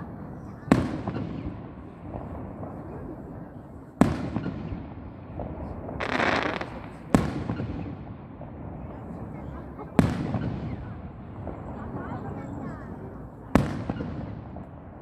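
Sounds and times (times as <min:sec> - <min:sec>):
fireworks bursts echoing: 0:00.0 - 0:15.0
firework hissing crackle: 0:05.9 - 0:07.3.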